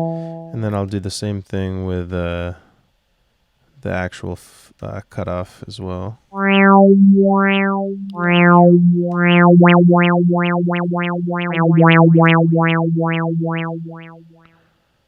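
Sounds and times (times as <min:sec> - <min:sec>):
synthesizer pad with filter sweeps: 0:00.0 - 0:00.8, 0:06.4 - 0:14.4.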